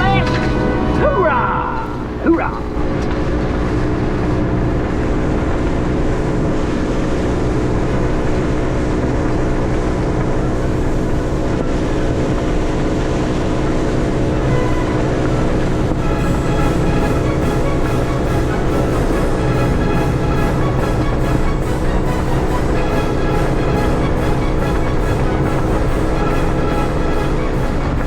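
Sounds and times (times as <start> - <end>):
music: 0.0 - 3.2, 3.8 - 28.0
outboard motor running: 0.0 - 28.0
water noise: 0.0 - 28.0
wind: 0.0 - 28.0.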